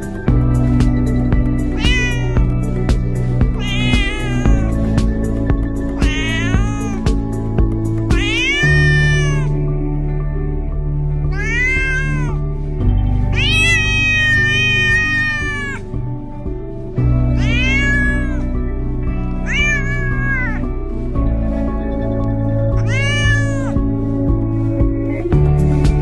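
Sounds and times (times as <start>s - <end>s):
background music: 0.0s - 26.0s
cat meowing: 1.7s - 7.2s, 8.1s - 9.6s, 11.3s - 12.4s, 13.3s - 15.8s, 17.3s - 18.6s, 19.3s - 20.7s, 22.8s - 23.8s.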